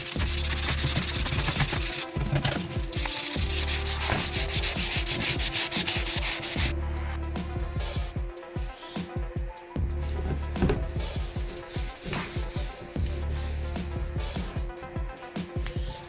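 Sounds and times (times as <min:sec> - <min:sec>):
sandpaper rubbing on vinyl: 0:00.0 - 0:06.7, 0:10.0 - 0:16.0.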